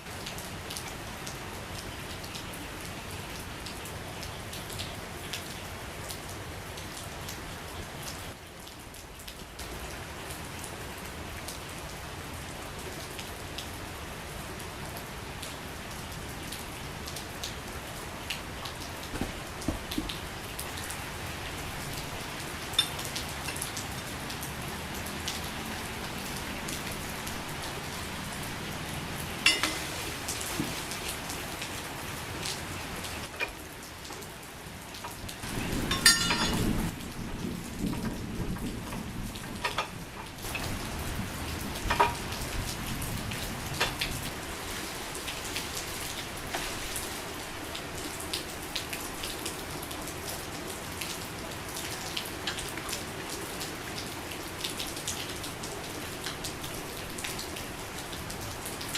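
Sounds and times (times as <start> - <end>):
steady rain falling: 0.0 - 58.9
drops ticking on surfaces: 19.1 - 20.3.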